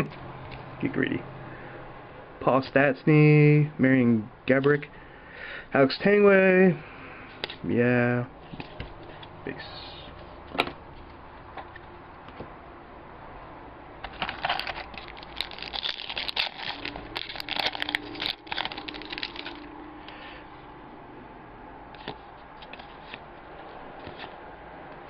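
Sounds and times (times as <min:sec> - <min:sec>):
foil pack crinkling and tearing: 0:14.1 - 0:19.7.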